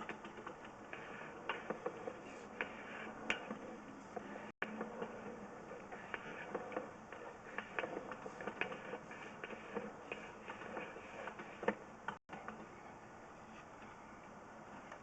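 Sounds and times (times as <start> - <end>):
cable reel clicking and ticking: 0.0 - 12.7.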